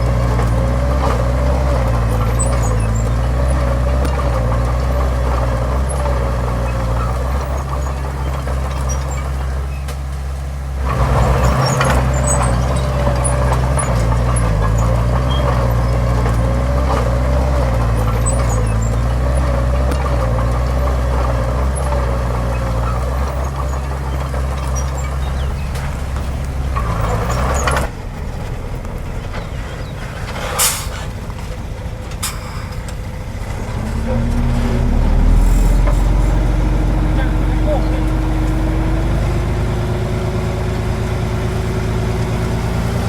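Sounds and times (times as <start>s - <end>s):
heavy diesel engine running: 0.0s - 43.0s
short sharp hiss: 30.4s - 31.1s.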